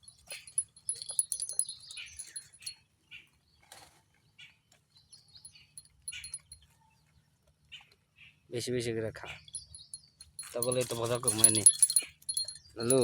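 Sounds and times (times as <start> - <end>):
metallic jingling and clinking: 0.0 - 2.8, 5.1 - 6.6, 9.3 - 13.0.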